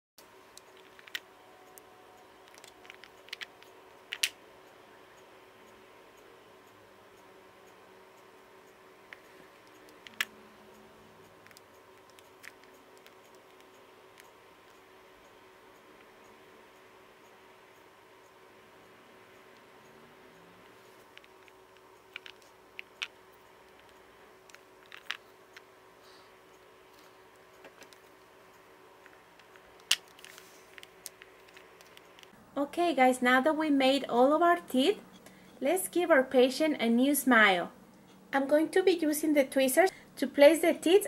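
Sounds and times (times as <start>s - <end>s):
faint steady hum: 0.2s - 41.0s
plastic toy pieces clicking: 2.4s - 4.4s, 21.2s - 23.1s, 23.7s - 25.2s.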